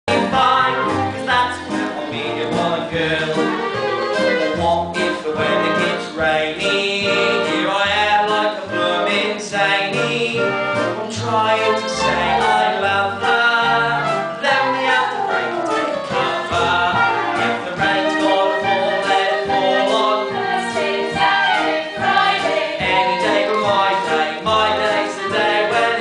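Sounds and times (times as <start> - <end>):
instrumental accompaniment: 0.1 - 26.0
voices singing a show tune: 4.5 - 26.0.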